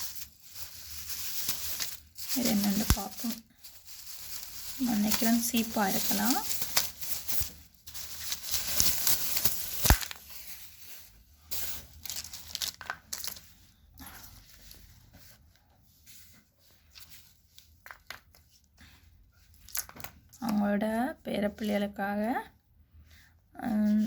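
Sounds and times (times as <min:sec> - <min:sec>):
packaging torn open and crinkled: 0:00.0 - 0:10.6, 0:11.8 - 0:13.4
packaging snapping: 0:04.3 - 0:10.2.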